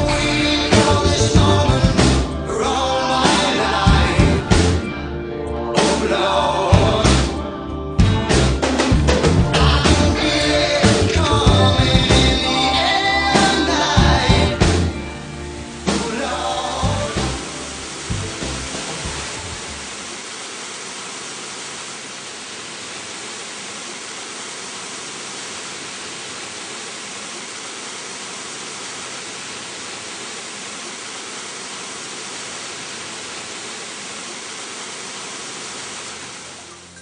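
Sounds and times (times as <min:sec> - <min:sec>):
steady static hiss: 0:00.0 - 0:02.5, 0:03.2 - 0:04.9, 0:08.4 - 0:37.0
music: 0:00.0 - 0:19.8.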